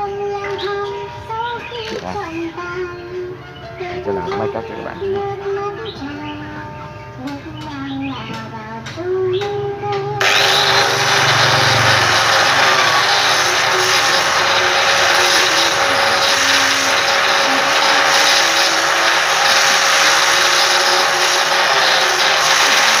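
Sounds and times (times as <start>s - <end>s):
power tool motor whirring: 10.2s - 23.0s.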